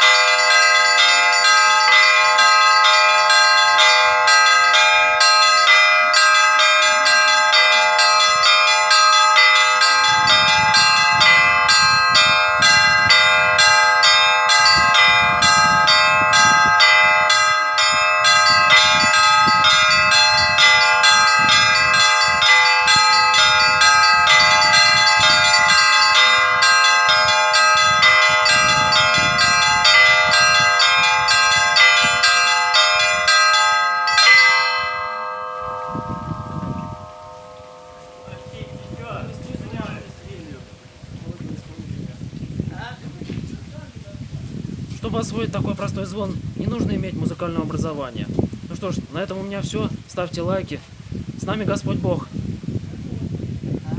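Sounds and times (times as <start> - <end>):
church bells pealing: 0.0 - 42.4.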